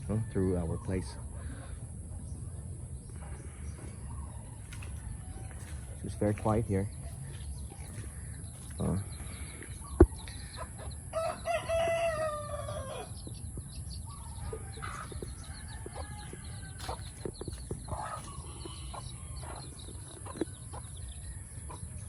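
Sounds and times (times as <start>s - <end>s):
poultry clucking: 0.0s - 22.0s
rooster crowing: 11.1s - 13.2s, 14.4s - 17.1s.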